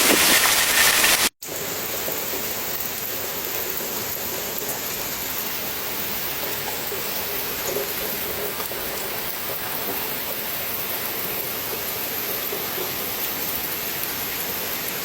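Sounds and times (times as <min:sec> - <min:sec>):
steady rain falling: 0:00.0 - 0:15.0.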